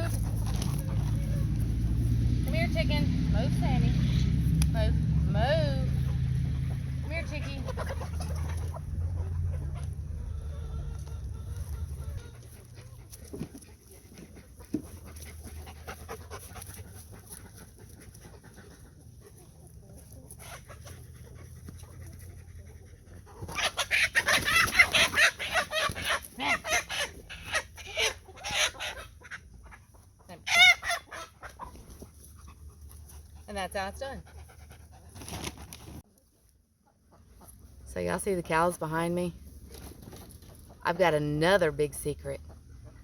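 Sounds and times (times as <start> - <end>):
faint chicken sounds: 5.9 - 32.9, 36.0 - 37.8
chicken squawk: 7.4 - 12.9, 23.3 - 32.0
chicken calling loudly: 23.3 - 31.8.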